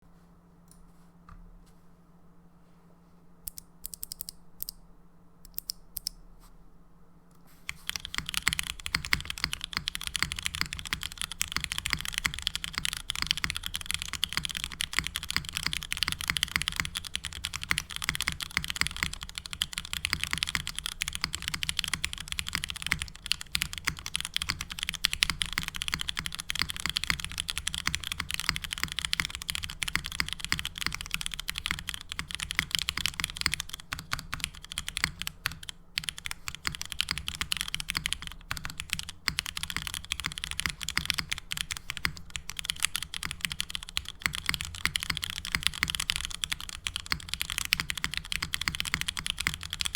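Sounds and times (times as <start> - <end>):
mechanical keyboard typing: 3.5 - 4.8, 7.7 - 49.9.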